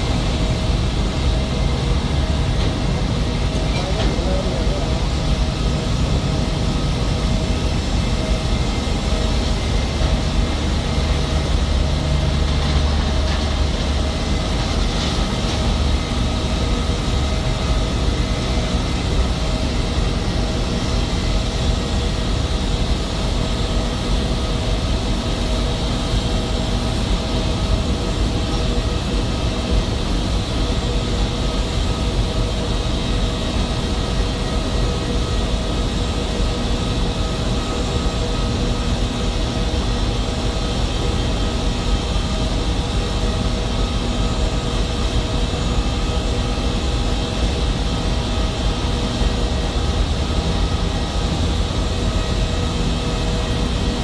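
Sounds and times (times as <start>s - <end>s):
jet engines running: 0.0s - 54.0s.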